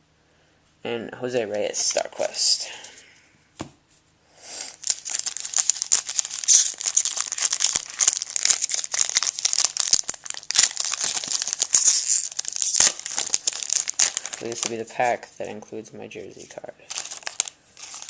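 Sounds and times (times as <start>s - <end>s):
foil wrapper crinkling and tearing: 4.7s - 15.3s, 16.9s - 18.0s.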